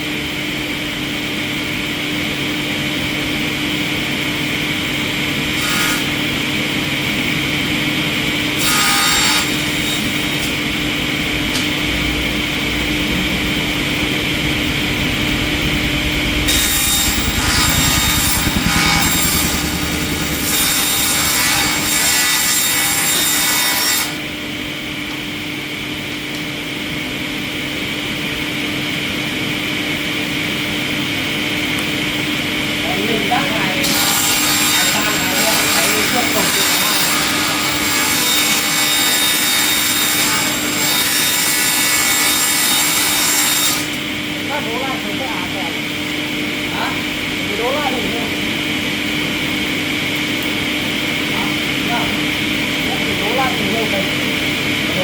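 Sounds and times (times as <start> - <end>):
wood machine humming: 8.2 - 24.3
machine rasping through wood: 8.5 - 10.6, 12.5 - 24.2, 33.8 - 44.0.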